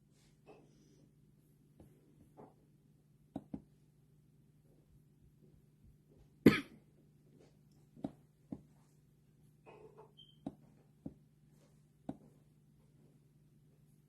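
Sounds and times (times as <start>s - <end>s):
person coughing: 6.4s - 6.8s.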